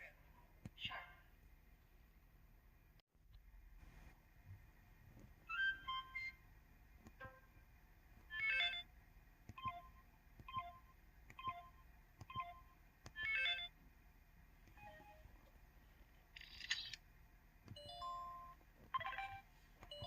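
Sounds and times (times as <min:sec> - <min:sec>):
phone chime: 0:17.8 - 0:20.0.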